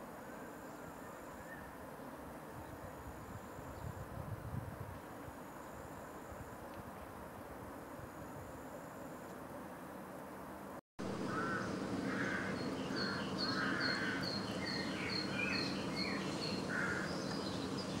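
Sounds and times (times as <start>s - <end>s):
harsh bird calls: 11.1s - 18.0s.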